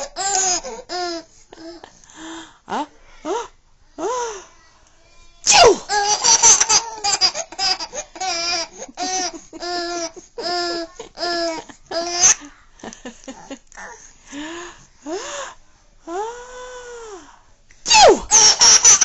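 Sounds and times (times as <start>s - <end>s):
baby laughing: 5.6s - 12.5s, 18.1s - 19.0s
baby squealing: 17.9s - 19.0s.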